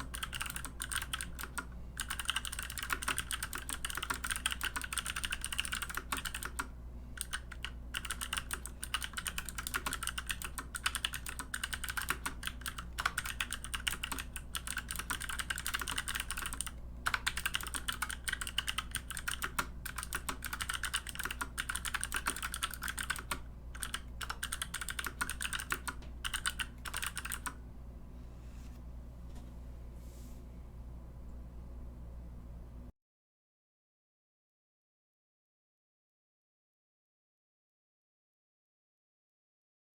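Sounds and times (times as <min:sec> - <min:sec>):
fast typing on mechanical keyboard: 0:00.0 - 0:27.6.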